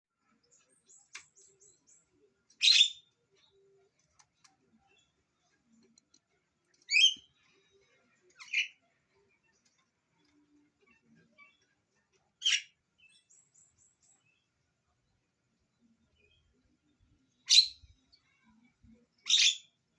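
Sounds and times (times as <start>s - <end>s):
bird chirping: 0.4s - 3.8s, 6.8s - 7.4s, 12.4s - 14.5s, 17.4s - 18.3s, 19.2s - 19.8s.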